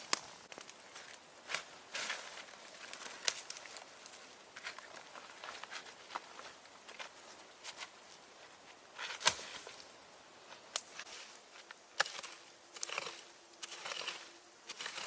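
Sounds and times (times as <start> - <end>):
sharp snaps and knocks: 0.0 - 2.2, 9.0 - 9.9, 10.7 - 15.0.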